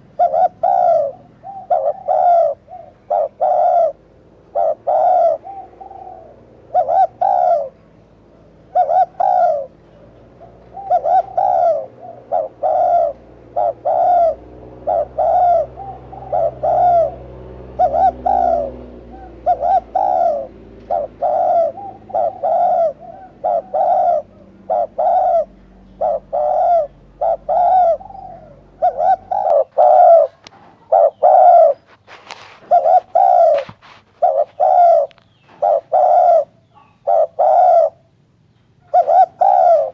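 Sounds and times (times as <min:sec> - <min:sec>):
dove cooing: 0:00.0 - 0:07.8, 0:08.4 - 0:38.2, 0:38.8 - 0:39.9.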